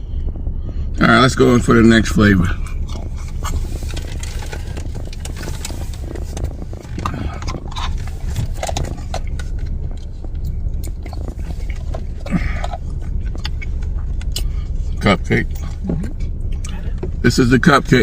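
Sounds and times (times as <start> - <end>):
low rumble: 0.0 - 18.0
chewing: 2.8 - 14.7.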